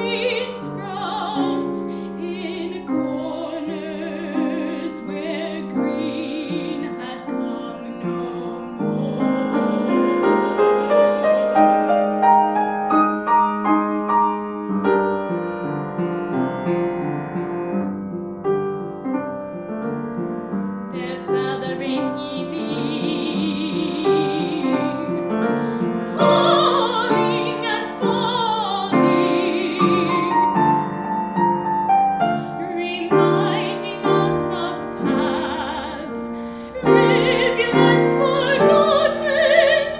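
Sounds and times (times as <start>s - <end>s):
woman singing with vibrato: 0.0s - 12.4s, 21.0s - 31.1s, 32.4s - 39.9s
piano playing flowing figures: 0.0s - 39.9s.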